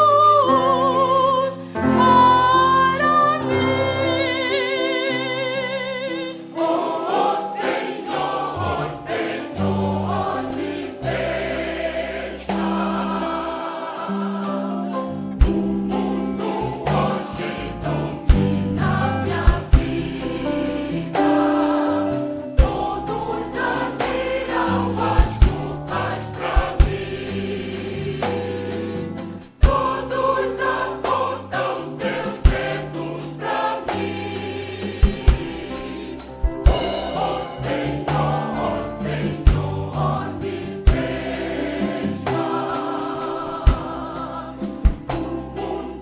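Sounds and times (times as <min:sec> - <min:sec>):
choir singing gospel: 0:00.0 - 0:46.0
sharp percussive strikes: 0:29.6 - 0:45.8.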